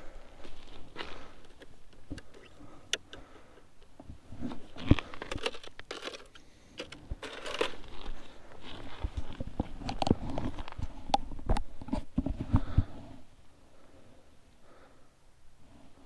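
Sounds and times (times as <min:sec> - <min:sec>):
footsteps crunching in snow: 0:07.2 - 0:09.6.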